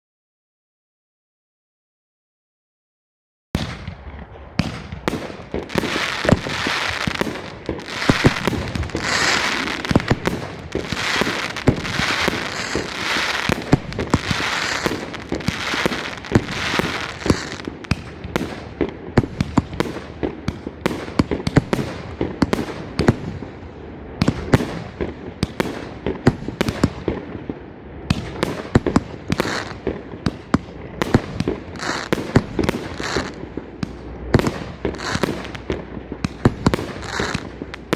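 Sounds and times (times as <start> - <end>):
fireworks shots launching: 3.6 - 23.6, 24.2 - 37.9
crackling hissing firework bursts: 4.6 - 23.5, 28.2 - 37.9.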